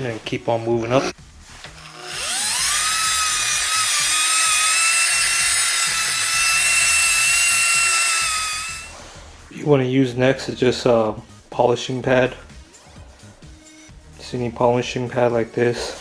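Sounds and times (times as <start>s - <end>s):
rotary polisher whine: 1.7s - 8.9s.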